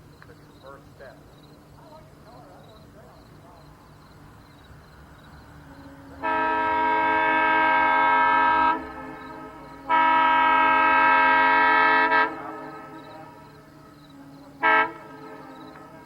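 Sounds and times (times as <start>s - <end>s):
locomotive air horn blasts: 5.4s - 16.0s.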